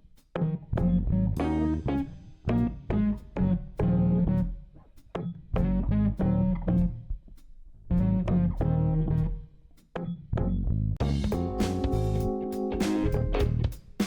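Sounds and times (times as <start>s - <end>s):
plucked bass and guitar: 0.4s - 4.5s, 5.6s - 7.1s, 7.9s - 9.4s, 10.4s - 13.8s.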